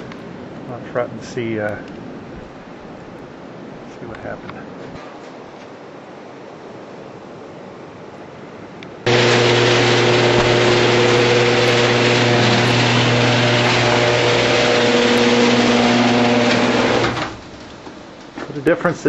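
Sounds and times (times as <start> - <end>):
engine running steadily: 9.1 - 17.4.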